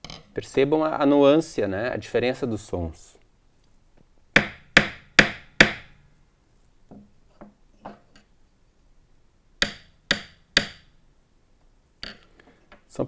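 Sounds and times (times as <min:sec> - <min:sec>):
drumsticks striking hard object: 0:09.6 - 0:10.9.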